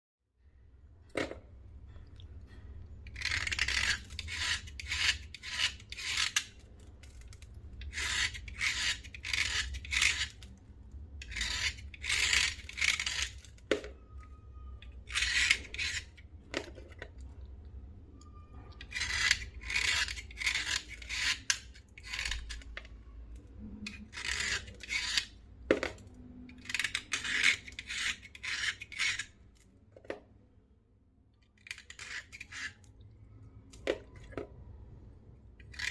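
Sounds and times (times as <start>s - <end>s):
slate pencils scraping: 3.1s - 10.5s, 11.2s - 13.7s, 14.6s - 16.9s, 18.8s - 22.9s, 23.8s - 25.9s, 26.5s - 29.4s, 31.6s - 32.9s, 35.6s - 35.9s.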